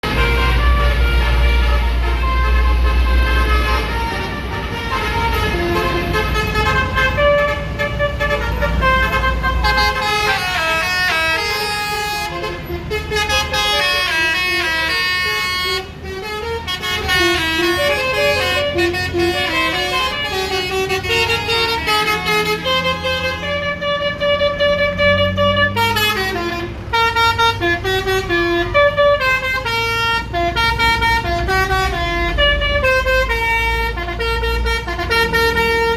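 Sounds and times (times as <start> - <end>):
bus engines rumbling: 0.0 - 35.9
musical bus horns playing tunes: 0.0 - 35.9.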